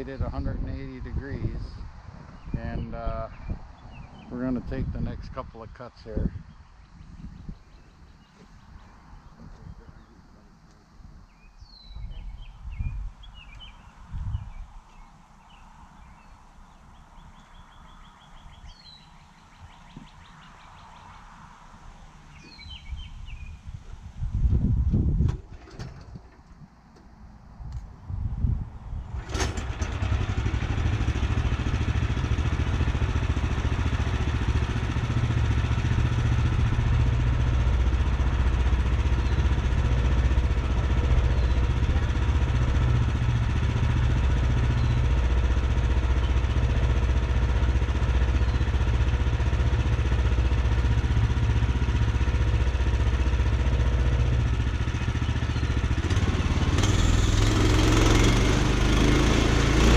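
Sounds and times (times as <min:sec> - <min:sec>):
sawmill gasoline engine running: 0:29.2 - 0:59.9.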